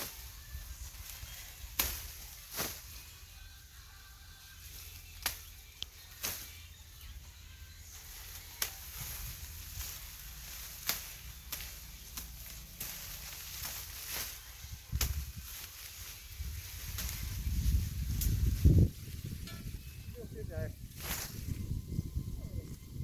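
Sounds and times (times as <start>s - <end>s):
corn ears snapping off stalks: 0.0s - 3.2s, 4.6s - 7.2s, 7.8s - 18.7s, 20.9s - 21.6s
husks rustling: 0.0s - 3.4s, 4.4s - 21.7s.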